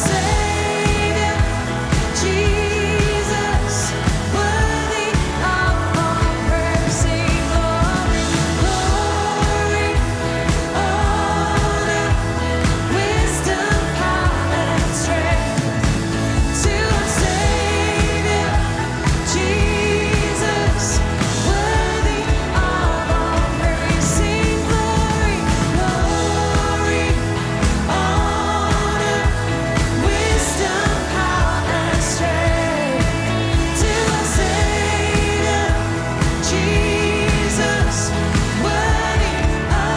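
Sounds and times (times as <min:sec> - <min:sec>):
live worship band music: 0:00.0 - 0:39.9
person singing: 0:00.0 - 0:39.9.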